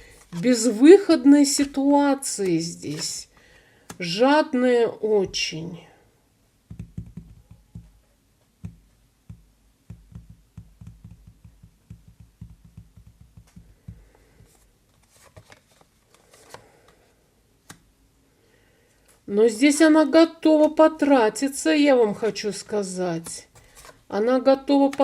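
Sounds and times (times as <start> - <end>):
light card rustles: 0.0 - 4.1, 14.5 - 17.0, 22.2 - 24.0
cards thumping and tapping: 1.6 - 4.0, 6.7 - 8.0, 8.6 - 16.6, 22.3 - 24.0.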